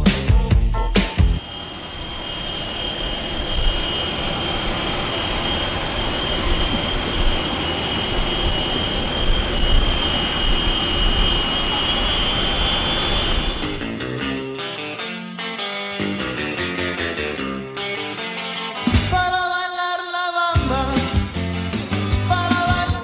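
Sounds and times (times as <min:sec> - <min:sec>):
machine whining with air rush: 0:01.3 - 0:13.9.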